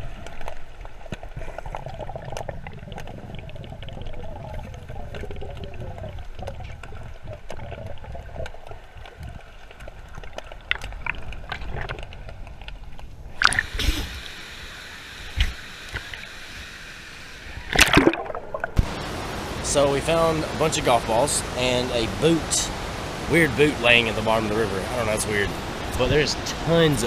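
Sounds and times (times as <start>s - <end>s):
river water sloshing and gurgling: 0.0s - 14.2s, 17.7s - 27.0s
knocks and splashes: 17.7s - 19.1s.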